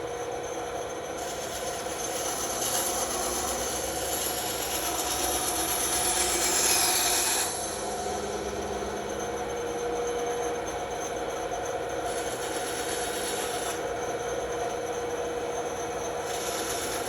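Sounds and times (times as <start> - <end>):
bandsaw motor hum: 1.1 - 17.0
saw blade cutting wood: 1.2 - 8.0, 12.1 - 13.9, 16.2 - 17.0.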